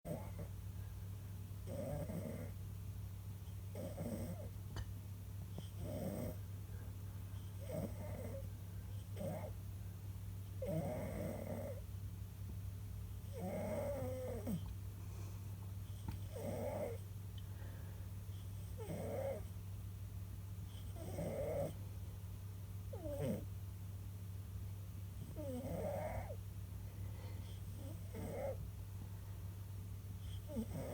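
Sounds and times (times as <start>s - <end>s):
cat snoring: 0.1s - 0.5s, 1.7s - 2.6s, 3.7s - 4.5s, 5.6s - 6.4s, 7.6s - 8.5s, 9.2s - 9.5s, 10.6s - 11.8s, 13.3s - 14.7s, 16.2s - 17.0s, 18.6s - 19.5s, 20.7s - 21.8s, 22.9s - 23.5s, 25.2s - 26.4s, 27.5s - 28.6s, 30.2s - 30.9s.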